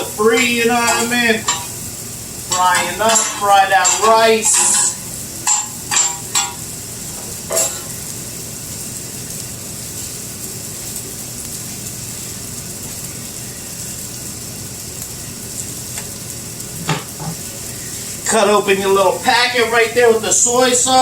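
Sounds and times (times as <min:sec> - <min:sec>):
rice sizzling on a grill: 0:00.0 - 0:21.0.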